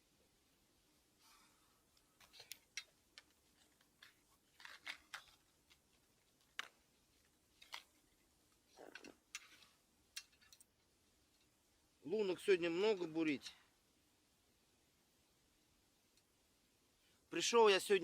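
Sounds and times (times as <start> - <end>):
small metal parts clicking: 8.9 - 10.7.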